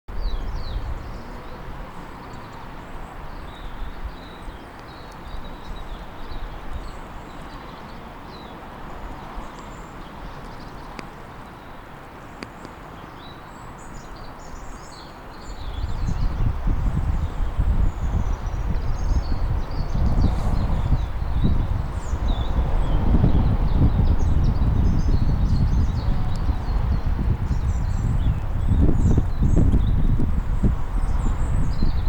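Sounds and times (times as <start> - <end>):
wind buffeting microphone: 0.1 - 11.0, 13.9 - 32.0
wind rushing: 15.6 - 32.0.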